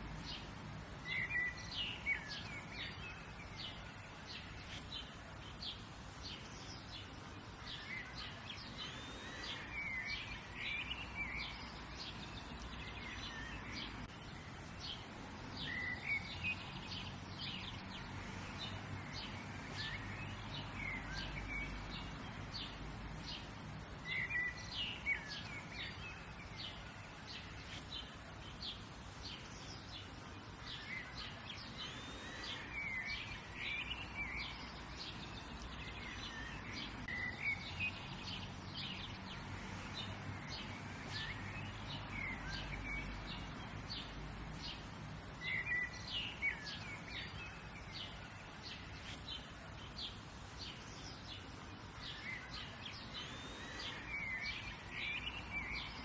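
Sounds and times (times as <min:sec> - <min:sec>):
birds chirping and singing: 0:00.0 - 0:56.0.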